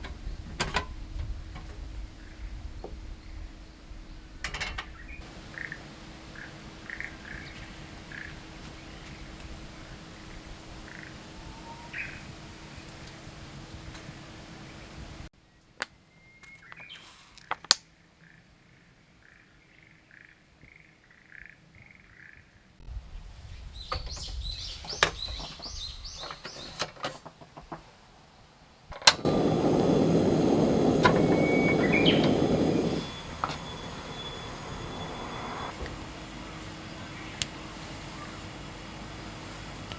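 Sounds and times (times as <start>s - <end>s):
birds chirping: 2.2s - 12.3s, 23.2s - 39.9s
loud steady rushing hiss: 5.2s - 10.9s, 28.9s - 39.9s.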